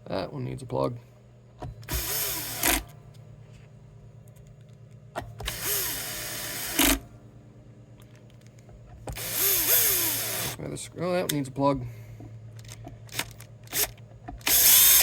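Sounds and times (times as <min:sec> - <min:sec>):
cordless drill motor whine: 0:01.8 - 0:02.9, 0:05.4 - 0:07.0, 0:09.1 - 0:10.6, 0:12.6 - 0:15.0.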